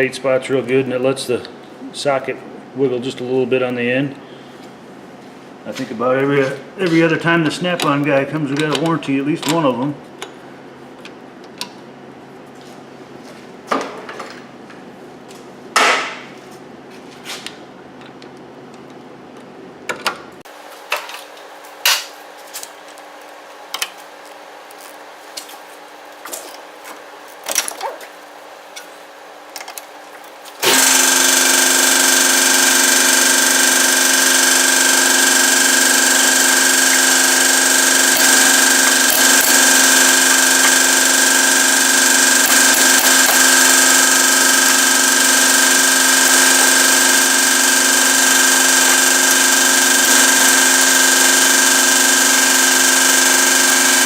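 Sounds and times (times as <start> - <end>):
loud steady machine noise: 30.6 - 54.0.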